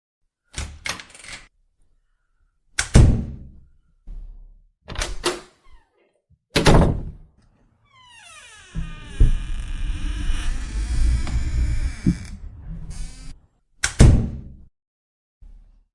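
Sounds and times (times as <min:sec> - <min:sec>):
door slamming shut: 0:06.6 - 0:07.2, 0:08.1 - 0:12.4, 0:13.9 - 0:14.4.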